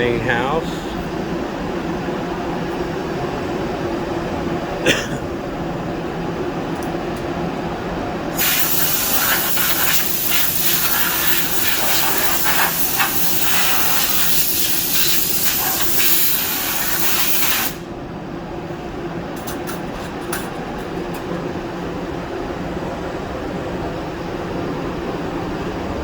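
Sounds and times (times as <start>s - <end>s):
spray gun hissing: 8.4s - 17.8s.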